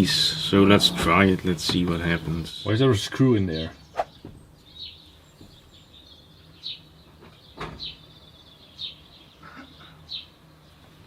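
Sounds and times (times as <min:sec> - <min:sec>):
small bird chirping: 0:03.5 - 0:10.9.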